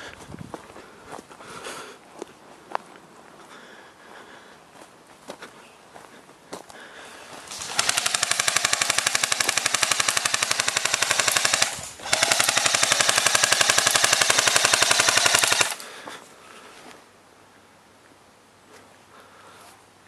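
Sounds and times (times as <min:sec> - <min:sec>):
airsoft gun full-auto bursts: 0:07.4 - 0:15.9.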